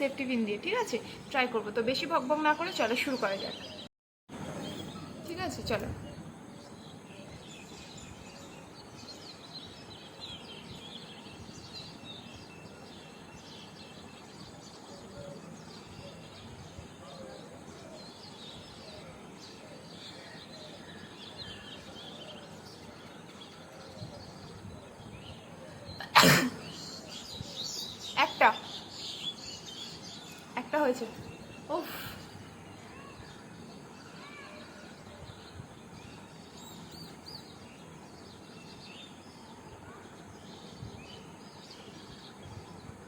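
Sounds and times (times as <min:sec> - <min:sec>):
birds chirping: 0:00.0 - 0:43.0
loud human sneeze: 0:26.0 - 0:26.9.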